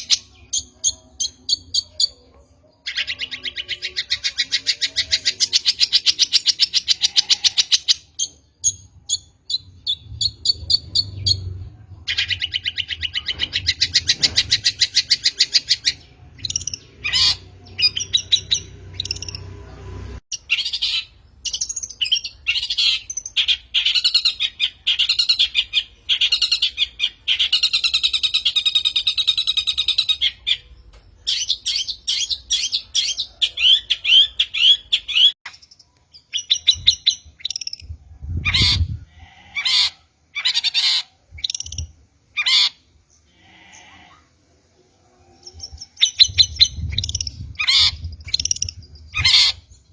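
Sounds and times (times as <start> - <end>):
shrike singing with trills and chirps: 0.0 - 39.0, 45.1 - 49.9.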